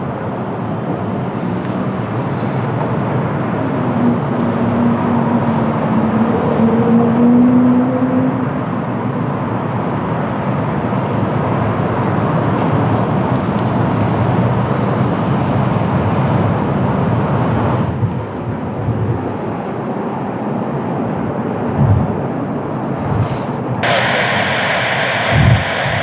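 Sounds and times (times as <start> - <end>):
faint hum: 0.0 - 18.0, 23.8 - 26.0
jet engine rushing: 0.0 - 18.0, 23.6 - 26.0.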